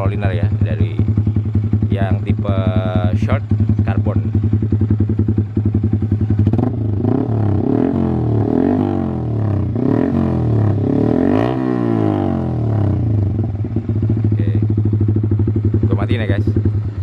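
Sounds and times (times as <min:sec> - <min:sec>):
motorcycle engine revving: 0:00.0 - 0:17.0.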